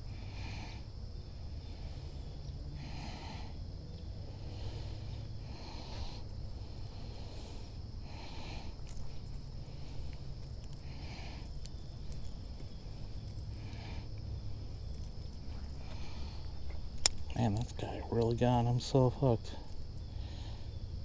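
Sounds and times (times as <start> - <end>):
faint high insect drone: 0.0 - 21.0
steady low rumble: 0.0 - 21.0
person breathing through nose: 4.3 - 14.2, 20.0 - 20.8.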